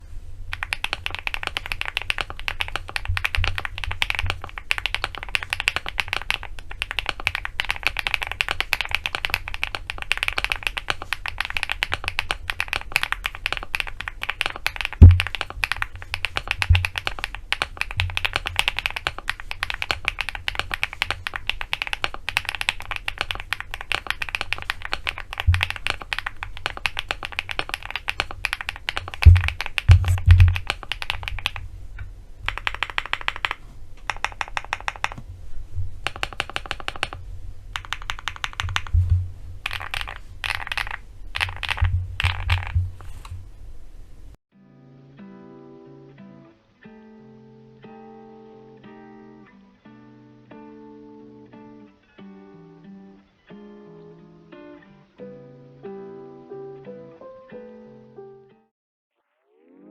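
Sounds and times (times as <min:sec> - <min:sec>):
fast typing on mechanical keyboard: 0:00.5 - 0:31.6, 0:32.5 - 0:35.2, 0:36.0 - 0:43.1
deep keyboard thumps: 0:29.2 - 0:31.5, 0:37.8 - 0:40.0, 0:40.7 - 0:43.0.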